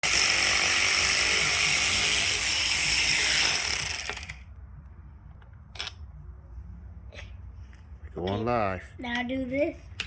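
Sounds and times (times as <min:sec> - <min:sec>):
power tool whining: 0:00.0 - 0:04.4.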